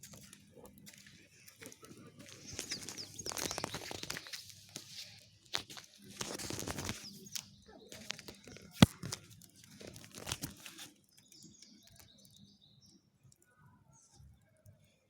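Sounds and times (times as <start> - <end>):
campfire wood crackling: 0.0 - 12.4
sharp loud wood snap: 8.4 - 9.2.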